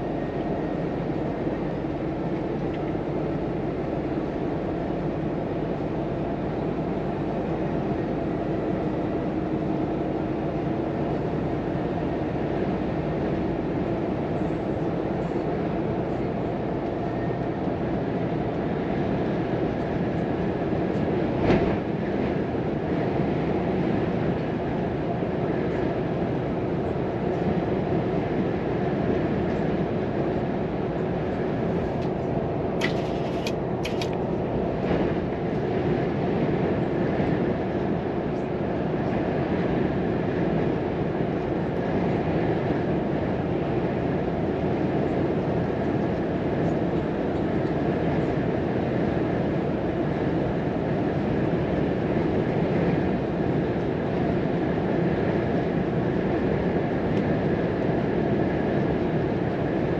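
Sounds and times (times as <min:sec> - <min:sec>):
truck engine and road noise: 0:00.0 - 0:59.9.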